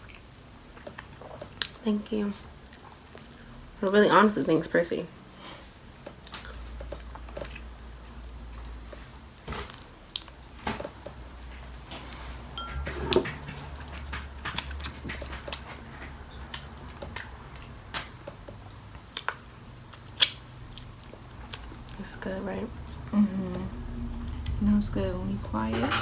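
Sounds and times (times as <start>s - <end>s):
wet chewing and smacking: 0.0s - 1.8s, 2.6s - 3.5s, 6.0s - 10.4s, 12.7s - 22.0s
low steady hum: 12.4s - 19.3s, 19.9s - 26.0s.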